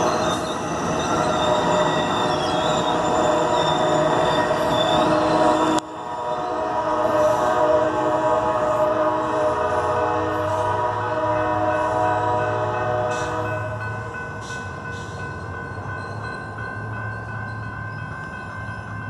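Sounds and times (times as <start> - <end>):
diesel locomotive engine hum: 0.0 - 19.0
train running noise: 0.0 - 19.0
train horn chord: 5.1 - 14.0.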